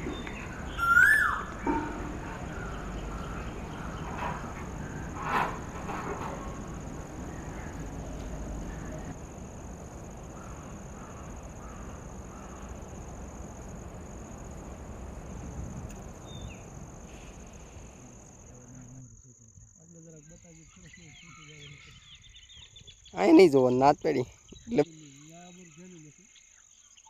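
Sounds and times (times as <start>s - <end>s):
low rumbling outdoor noise: 0.0s - 27.0s
high-pitched insect drone: 6.4s - 22.2s, 23.0s - 27.0s.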